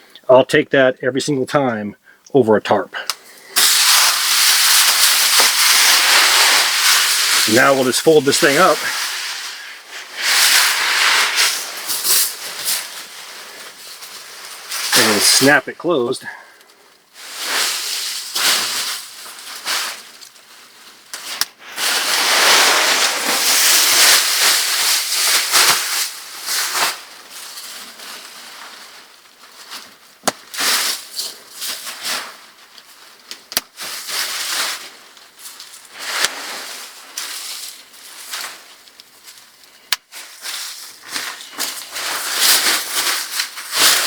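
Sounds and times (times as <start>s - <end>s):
leaves and poncho rustling: 3.3s - 44.0s.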